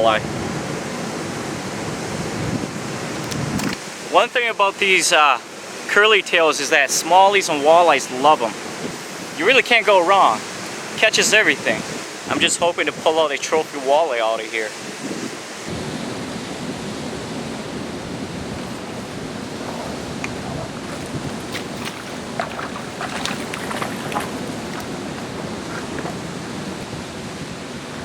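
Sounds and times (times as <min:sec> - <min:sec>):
wind on microphone: 0:01.6 - 0:03.8, 0:15.0 - 0:28.0
river water rushing over boulders: 0:16.8 - 0:26.9.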